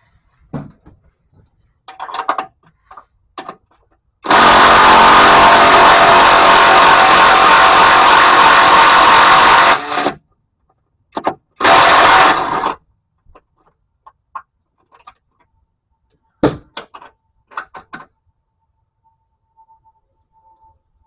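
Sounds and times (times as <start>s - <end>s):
power tool running in bursts: 4.2s - 10.2s, 11.6s - 12.8s.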